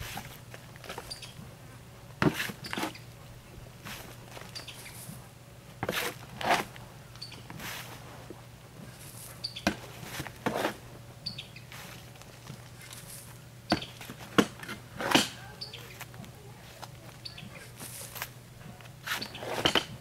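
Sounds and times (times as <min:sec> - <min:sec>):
small birds chirping: 0:01.0 - 0:01.5, 0:04.4 - 0:05.1, 0:07.1 - 0:07.5, 0:09.2 - 0:09.7, 0:11.2 - 0:11.8, 0:15.4 - 0:17.8
shovel scraping compost: 0:02.2 - 0:03.0, 0:03.8 - 0:05.2, 0:05.8 - 0:06.8, 0:07.5 - 0:10.8, 0:11.7 - 0:12.2, 0:12.8 - 0:13.4, 0:17.6 - 0:18.3, 0:19.0 - 0:20.0.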